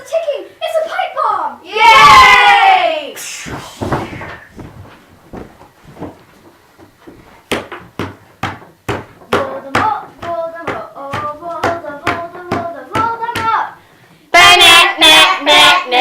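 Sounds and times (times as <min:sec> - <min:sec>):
hand claps keeping a beat: 0:07.5 - 0:13.6.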